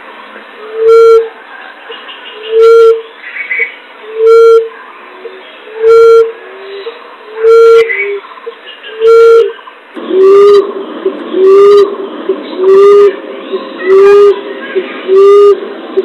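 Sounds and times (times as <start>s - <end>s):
dove hooting: 2.3s - 3.0s, 4.1s - 16.0s.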